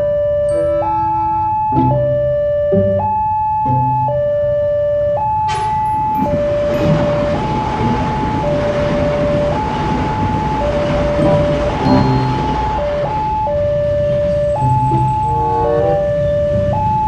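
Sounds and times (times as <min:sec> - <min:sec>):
two-tone hi-lo siren: 0:00.0 - 0:17.0
steady rushing noise: 0:06.3 - 0:13.4.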